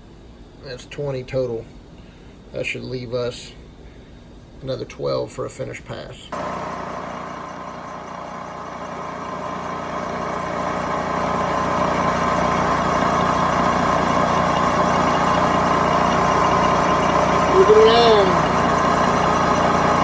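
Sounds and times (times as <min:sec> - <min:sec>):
milling machine humming: 0:06.4 - 0:20.0.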